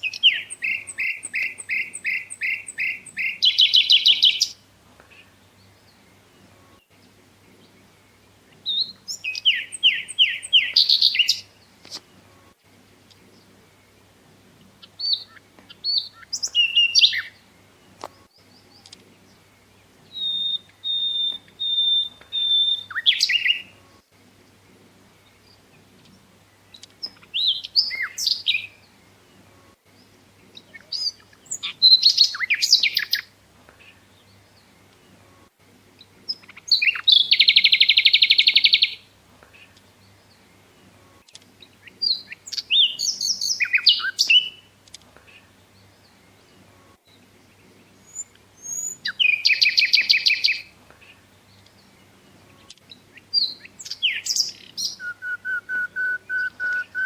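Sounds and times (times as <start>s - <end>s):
buzzy bird trill: 0.0s - 4.6s, 8.7s - 11.5s
birdsong chirps and whistles: 0.0s - 12.5s, 14.7s - 35.4s, 36.0s - 57.0s.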